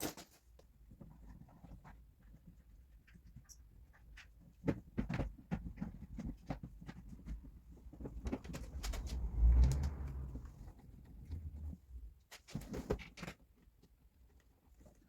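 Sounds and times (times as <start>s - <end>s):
scraping and rustling: 5.8s - 13.2s.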